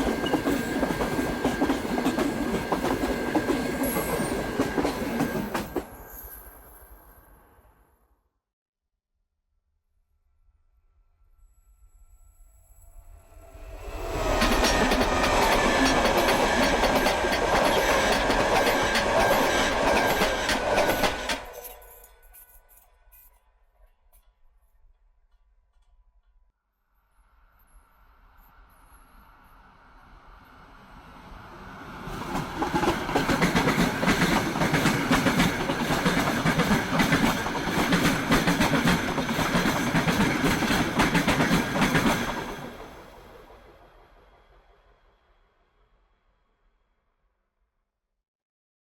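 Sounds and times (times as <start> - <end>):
train rumbling and rattling: 0.0 - 6.2, 13.4 - 22.3, 30.4 - 44.8.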